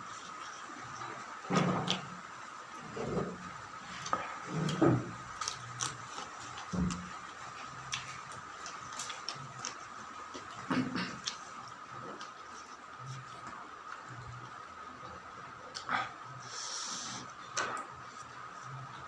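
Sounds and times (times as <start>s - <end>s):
person chewing and lip-smacking: 4.0s - 14.0s.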